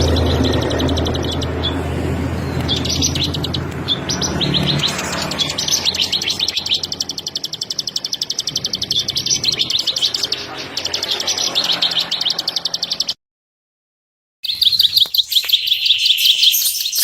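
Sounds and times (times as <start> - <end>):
low hum: 0.0 - 11.6
bird singing rapid trills: 0.0 - 13.2, 14.4 - 17.0.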